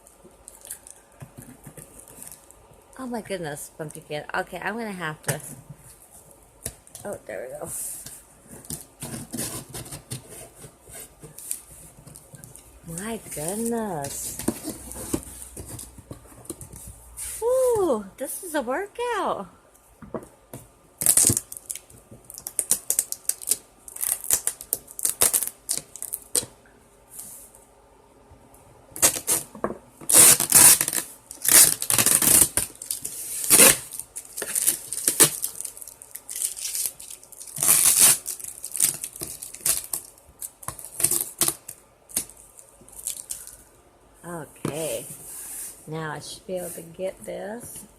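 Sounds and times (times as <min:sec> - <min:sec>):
scraping tape on cardboard: 0:07.9 - 0:11.8, 0:29.0 - 0:35.4, 0:37.6 - 0:40.0
tape ripping: 0:21.0 - 0:26.5, 0:29.0 - 0:29.5, 0:30.1 - 0:42.4.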